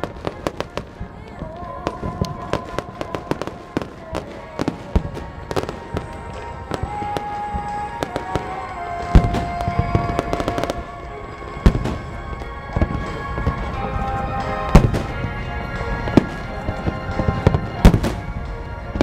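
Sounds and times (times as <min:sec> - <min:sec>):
fireworks bangs and crackles: 0:00.0 - 0:19.0
music with long held notes: 0:00.0 - 0:19.0
big firework booms: 0:11.5 - 0:19.0.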